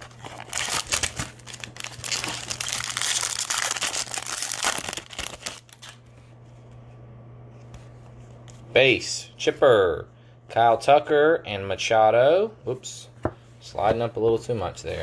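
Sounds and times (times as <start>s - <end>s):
wrapper tearing and crinkling: 0.0s - 6.0s
low electrical hum: 0.0s - 15.0s.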